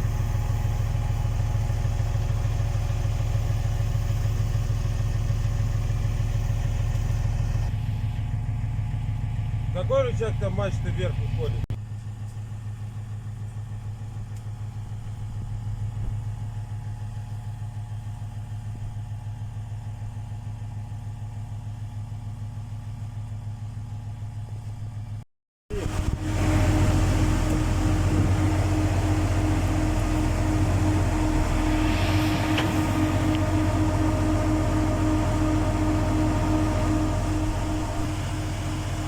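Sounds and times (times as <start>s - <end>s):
drilling rig engine running: 25.7s - 39.0s
steady whine: 25.7s - 39.0s.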